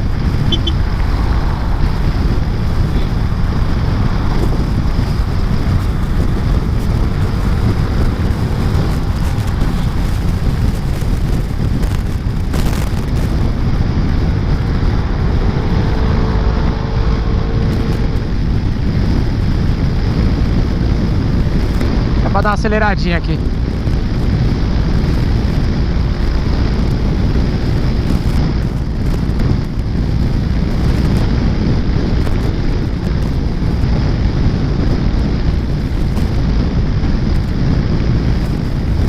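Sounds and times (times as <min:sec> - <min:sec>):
scooter engine: 0:00.0 - 0:21.6
faint engine whine: 0:00.0 - 0:33.9
traffic noise: 0:00.0 - 0:39.0
wind buffeting on microphone: 0:00.0 - 0:39.0.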